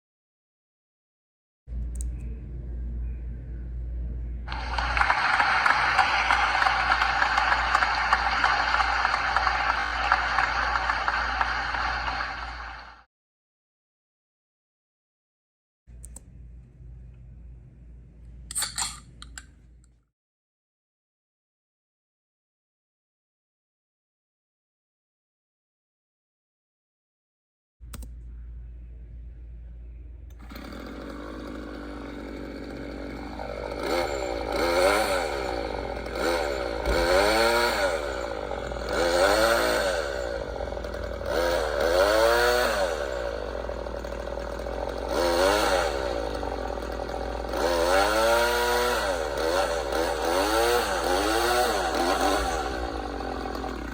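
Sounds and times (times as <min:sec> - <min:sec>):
small engine revving: 0:04.5 - 0:13.1, 0:30.3 - 0:53.9.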